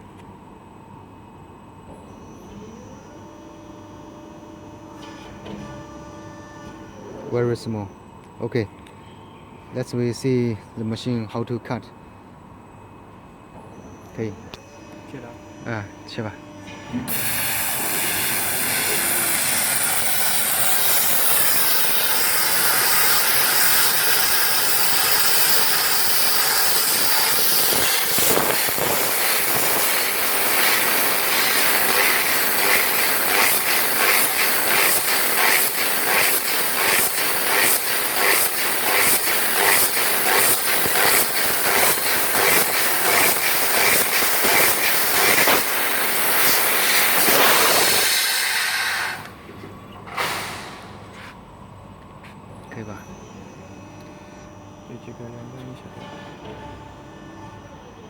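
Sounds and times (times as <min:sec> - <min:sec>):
laser cutter gas hiss: 0:14.7 - 0:49.3.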